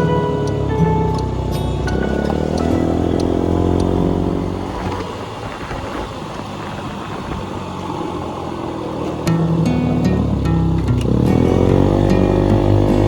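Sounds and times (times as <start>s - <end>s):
background music: 0.0s - 5.6s, 9.3s - 13.0s
road and wind noise: 0.0s - 13.0s
scooter engine running: 0.0s - 13.0s.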